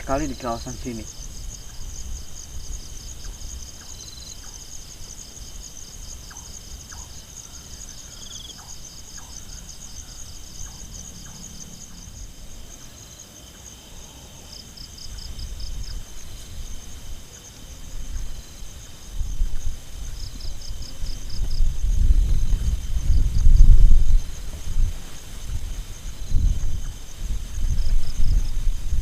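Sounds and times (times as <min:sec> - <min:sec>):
crickets chirring: 0:00.0 - 0:29.0
high insect drone: 0:00.0 - 0:29.0.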